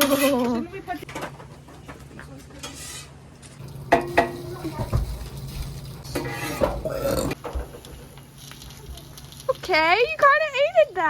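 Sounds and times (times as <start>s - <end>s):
metal utensils clinking on cookware: 2.6s - 5.5s.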